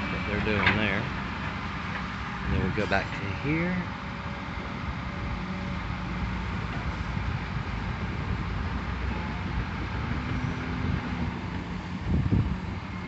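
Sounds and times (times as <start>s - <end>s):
engine drone: 0.0s - 13.0s.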